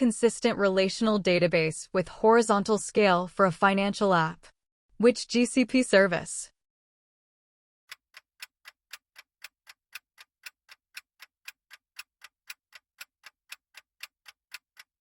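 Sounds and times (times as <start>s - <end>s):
timer ticking: 7.9s - 15.0s.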